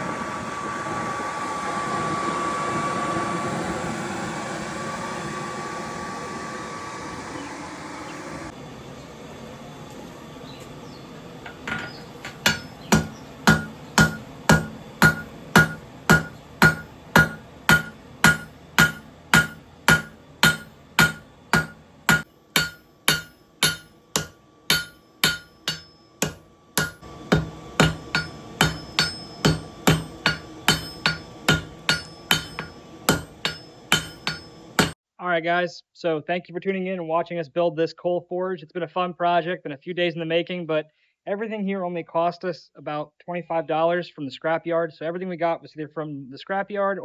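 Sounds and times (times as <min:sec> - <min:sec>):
hammer striking metal: 0:11.4 - 0:35.0.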